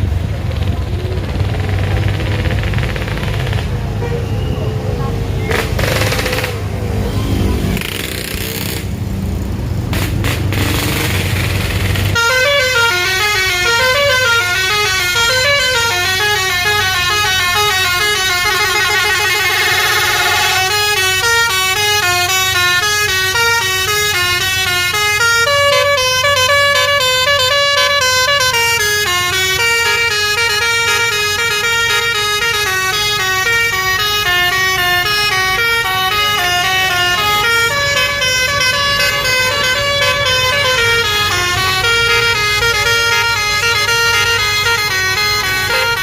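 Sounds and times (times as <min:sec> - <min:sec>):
multi-tone musical horn melody: 0:12.2 - 0:46.0.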